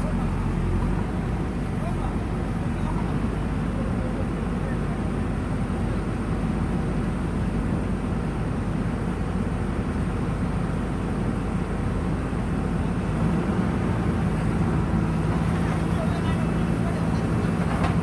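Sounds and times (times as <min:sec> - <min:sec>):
diesel engine droning: 0:00.0 - 0:04.6, 0:12.5 - 0:18.0.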